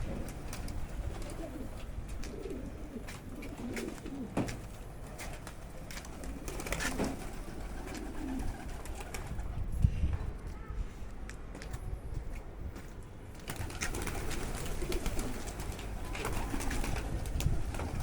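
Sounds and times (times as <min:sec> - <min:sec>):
pigeon cooing: 0:01.0 - 0:04.5, 0:06.4 - 0:09.0.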